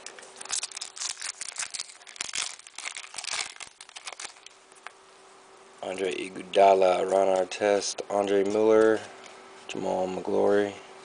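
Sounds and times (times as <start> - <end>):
wrapper tearing and crinkling: 0.0 - 4.9.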